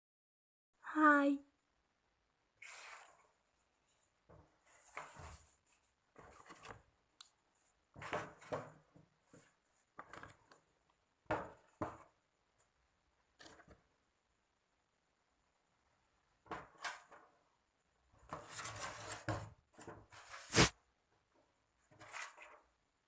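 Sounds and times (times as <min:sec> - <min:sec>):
scraping and rustling: 0:18.2 - 0:20.8, 0:21.8 - 0:22.7.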